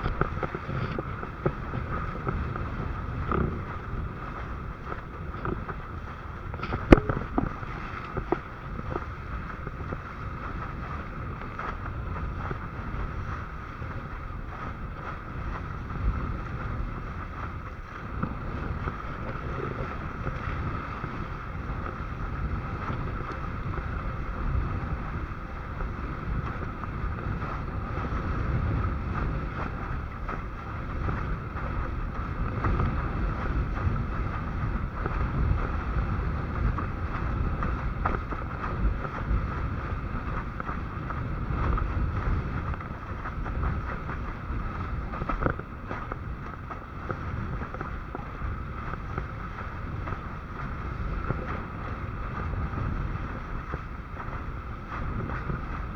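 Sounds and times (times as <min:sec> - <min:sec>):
water rushing: 0:00.0 - 0:12.1
wind buffeting microphone: 0:00.0 - 0:55.9.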